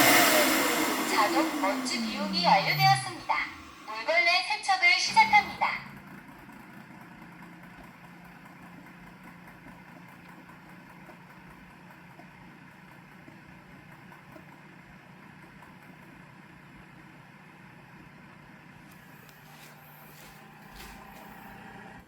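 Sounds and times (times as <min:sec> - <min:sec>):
faint motor hum: 0:00.0 - 0:06.6, 0:18.0 - 0:22.0.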